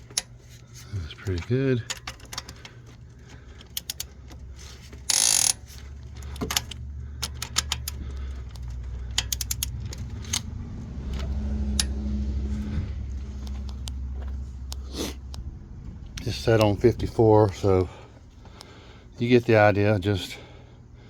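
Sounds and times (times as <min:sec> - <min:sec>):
low hum: 0:00.0 - 0:19.2
ratchet wrench clicking: 0:01.3 - 0:12.0.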